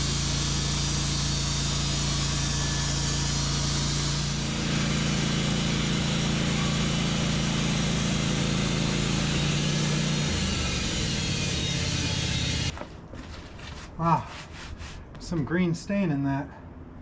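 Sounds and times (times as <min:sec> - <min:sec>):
band blade hissing through log: 0:00.0 - 0:12.7
sawmill engine running: 0:00.0 - 0:12.8.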